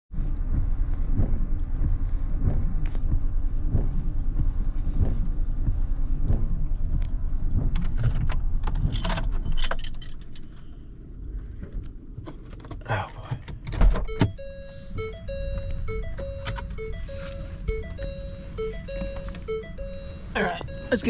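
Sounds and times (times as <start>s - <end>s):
low rumble of vehicle: 0.1s - 21.0s
regular thumping: 0.4s - 9.0s, 13.4s - 21.0s.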